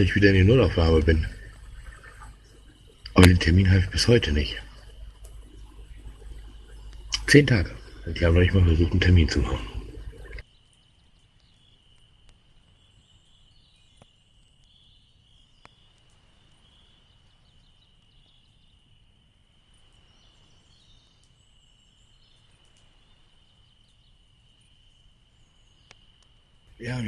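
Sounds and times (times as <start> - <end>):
faint chirps: 0.0 - 27.0
soft ticks: 4.7 - 7.9, 21.2 - 21.4, 22.3 - 23.0, 25.9 - 26.4.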